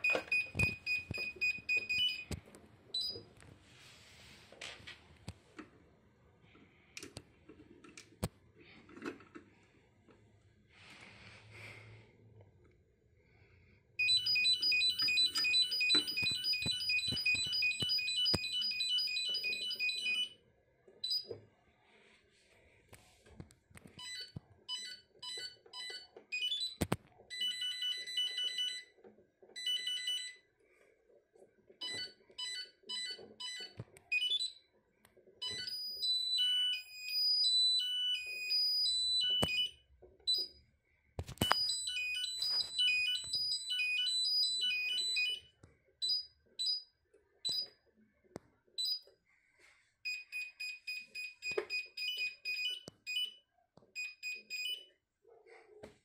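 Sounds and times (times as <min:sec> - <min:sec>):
electronic alarm beeping: 0:00.0 - 0:02.4, 0:14.0 - 0:20.4, 0:31.8 - 0:34.6, 0:35.4 - 0:40.6, 0:41.3 - 0:46.9, 0:47.5 - 0:47.8, 0:48.8 - 0:49.1, 0:50.1 - 0:53.4, 0:54.0 - 0:54.9.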